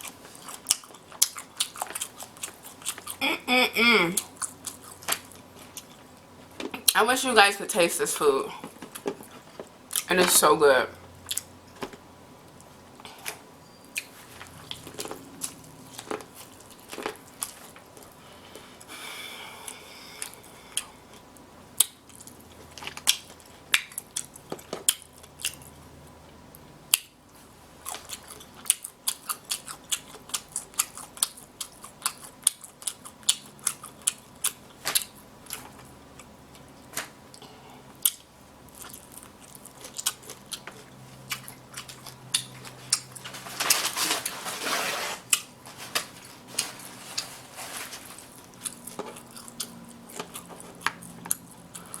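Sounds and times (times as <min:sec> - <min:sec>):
chewing and lip smacking: 0:00.0 - 0:03.2, 0:04.2 - 0:07.0, 0:27.8 - 0:36.7, 0:37.9 - 0:43.3, 0:48.2 - 0:52.0.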